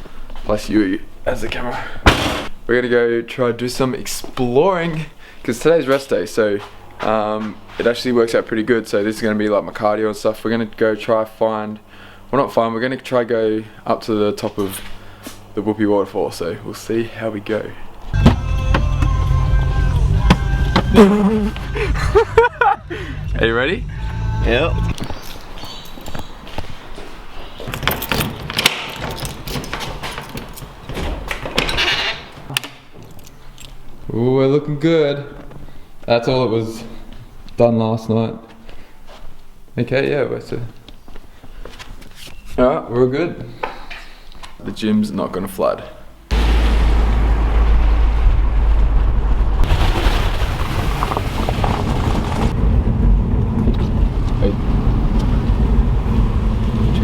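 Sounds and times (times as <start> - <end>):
wind buffeting microphone: 50.5 - 57.0.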